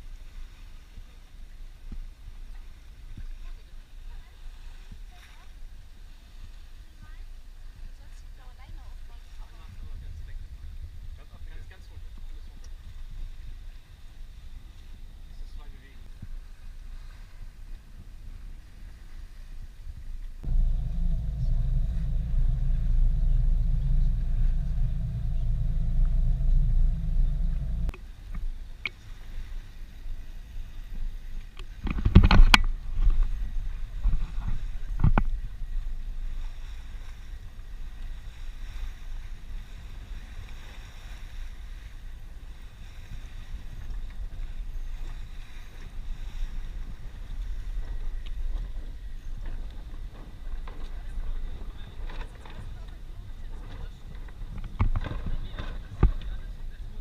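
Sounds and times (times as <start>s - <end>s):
boat engine rumble: 20.1s - 57.0s
faint steady hum: 20.4s - 28.6s.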